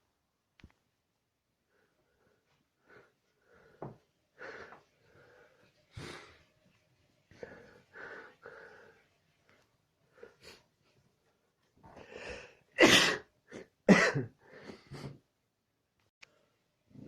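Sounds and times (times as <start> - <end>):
man gasping breaths and sniffles: 11.8 - 15.3.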